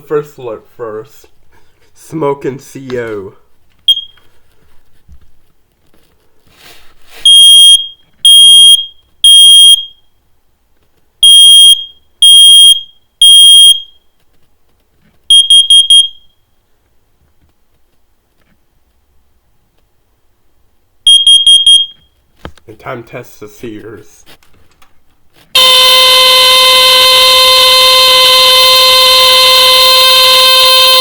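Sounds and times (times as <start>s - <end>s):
smoke alarm long high beeps: 3.9s - 4.2s, 7.2s - 10.1s, 11.2s - 14.0s, 15.3s - 16.4s, 21.1s - 22.0s, 25.6s - 31.0s.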